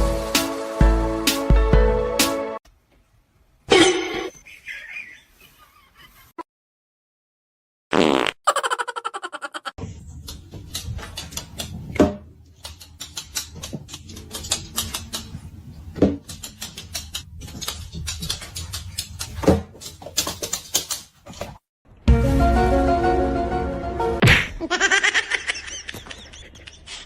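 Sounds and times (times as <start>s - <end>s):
music: 0.0s - 2.6s, 22.0s - 24.2s
clicking and tapping: 12.5s - 21.1s.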